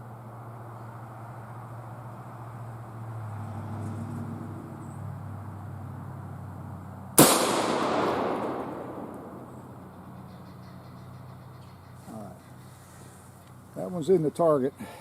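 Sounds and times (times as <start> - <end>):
rifle shot with echo: 7.2 - 10.3.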